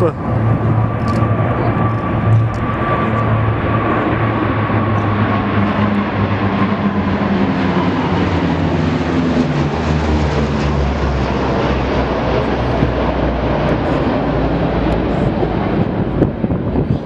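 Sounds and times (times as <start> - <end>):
military aircraft flying overhead: 0.0 - 17.0.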